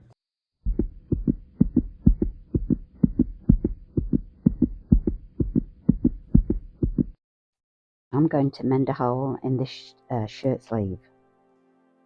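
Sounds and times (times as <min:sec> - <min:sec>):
heartbeat-like low thumps: 0:00.6 - 0:07.2.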